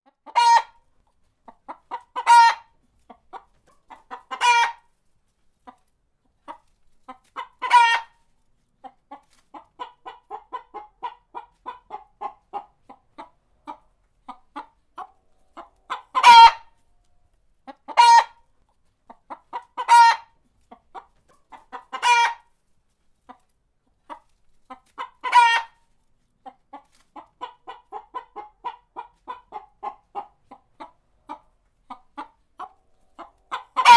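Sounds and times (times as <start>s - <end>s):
chicken clucking: 0.0s - 33.9s.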